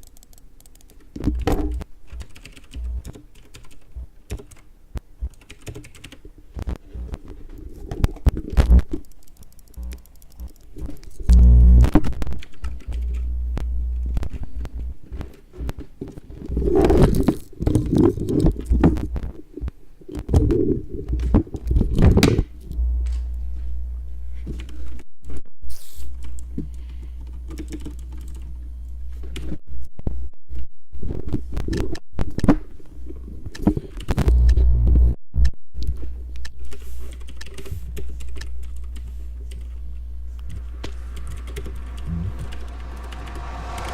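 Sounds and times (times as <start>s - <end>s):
mouse clicking: 0.0s - 6.8s, 8.0s - 11.4s, 12.0s - 15.4s
keyboard typing: 0.0s - 7.3s, 8.0s - 13.3s, 26.2s - 28.5s, 36.6s - 39.8s, 40.5s - 43.1s
low hum: 8.6s - 15.2s, 22.5s - 24.6s, 37.8s - 43.9s.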